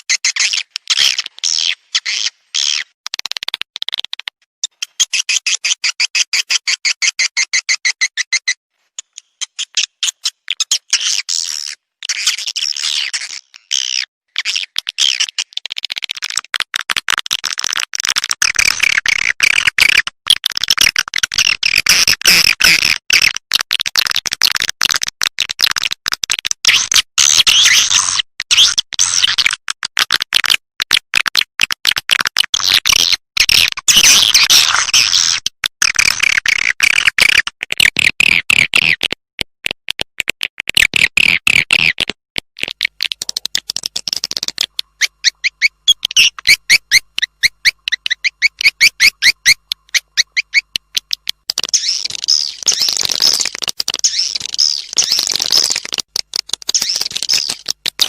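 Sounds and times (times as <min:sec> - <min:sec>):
swiftlet clicking chirps: 0:42.9 - 0:56.0, 0:56.6 - 0:57.8.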